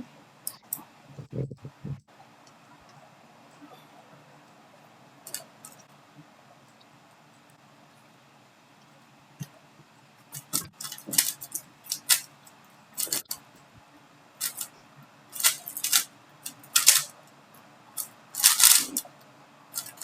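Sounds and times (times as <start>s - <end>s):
puzzle cube clicking and rattling: 5.3s - 5.8s, 10.3s - 12.3s, 13.0s - 13.4s, 14.4s - 14.7s, 15.3s - 17.2s, 18.0s - 19.1s, 19.7s - 20.0s.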